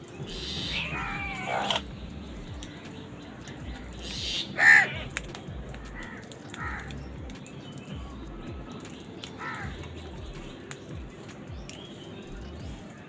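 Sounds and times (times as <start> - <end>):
crows cawing: 0.3 - 1.9, 4.0 - 5.2, 5.8 - 7.1, 9.4 - 9.9.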